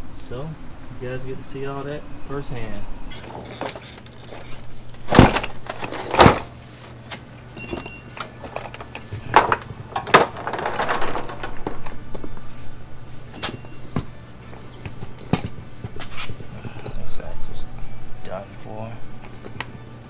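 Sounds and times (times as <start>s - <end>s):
scraping: 3.1s - 14.1s
tools knocking and clunking: 3.2s - 7.0s, 7.6s - 12.6s.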